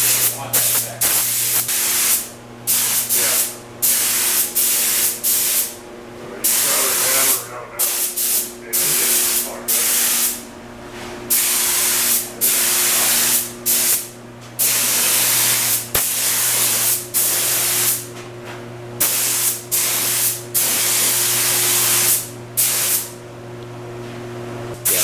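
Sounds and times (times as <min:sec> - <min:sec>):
paint spray gun hissing: 0:00.0 - 0:05.7, 0:07.9 - 0:10.4, 0:11.3 - 0:18.0, 0:19.0 - 0:23.1
steady low hum: 0:00.0 - 0:25.0.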